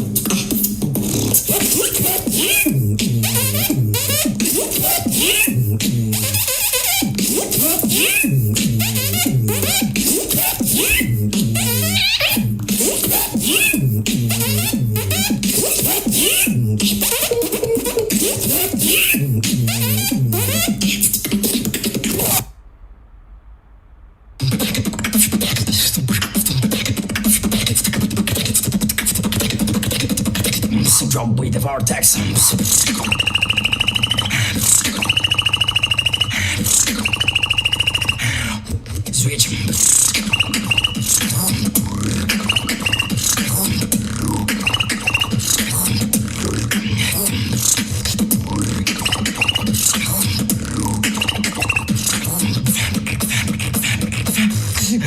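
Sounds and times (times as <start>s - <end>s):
beatboxing: 0.0s - 22.5s, 24.4s - 55.0s
steady bass hum: 0.0s - 49.0s, 49.7s - 51.2s
low hummed bass tone: 2.7s - 4.4s, 5.4s - 6.5s, 8.2s - 10.1s, 10.9s - 12.7s, 13.7s - 15.5s, 41.6s - 42.4s, 43.8s - 44.7s, 46.0s - 47.5s, 48.3s - 48.9s
high chirping squeaks: 32.5s - 38.6s, 40.0s - 41.6s, 42.3s - 43.9s, 44.5s - 46.1s.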